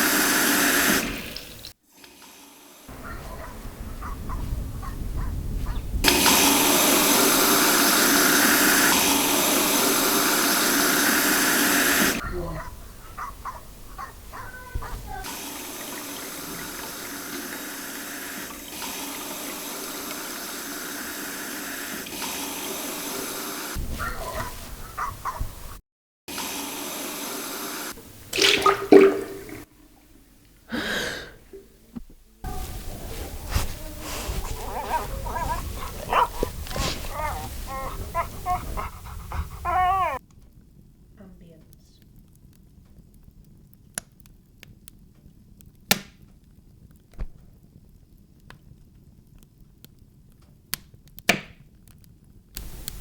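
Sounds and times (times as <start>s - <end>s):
water running: 0.0s - 4.0s, 6.1s - 23.9s, 26.3s - 40.2s, 52.6s - 53.0s
animal whining calls: 32.6s - 40.2s
steady background hiss: 52.6s - 53.0s.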